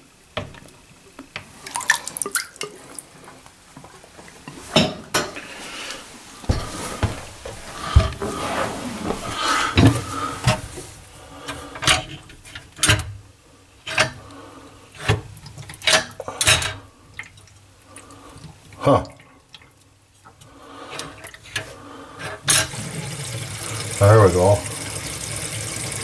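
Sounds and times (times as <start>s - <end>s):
sharp knocks and clacks of drain parts: 11.7s - 13.1s, 15.0s - 17.3s.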